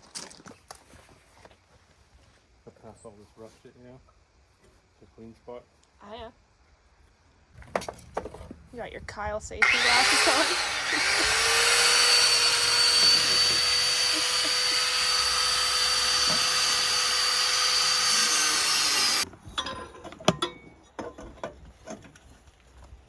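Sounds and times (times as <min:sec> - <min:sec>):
angle grinder grinding metal: 0:09.6 - 0:19.2.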